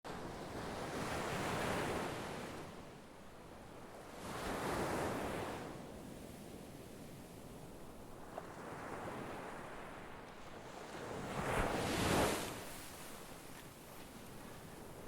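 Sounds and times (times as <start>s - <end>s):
ocean waves breaking on beach: 0.1s - 15.0s.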